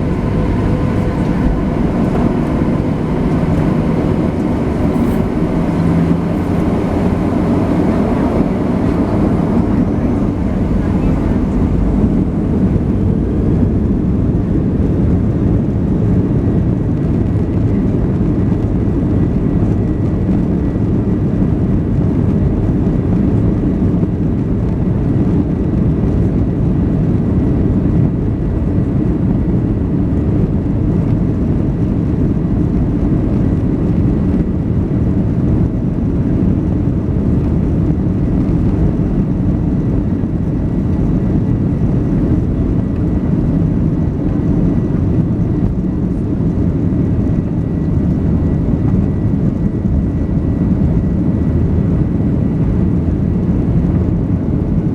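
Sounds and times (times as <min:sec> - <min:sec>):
faint high whine: 0:00.0 - 0:14.2
jet engine rumble in cabin: 0:00.0 - 0:54.9.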